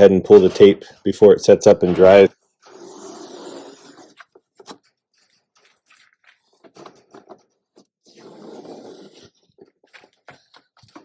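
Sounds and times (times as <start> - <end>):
tape peeling off: 2.4 - 7.1.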